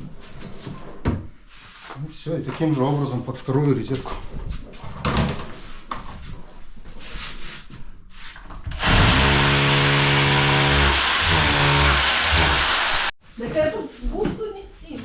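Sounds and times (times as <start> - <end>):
rotary hammer drill into concrete: 8.8 - 13.1.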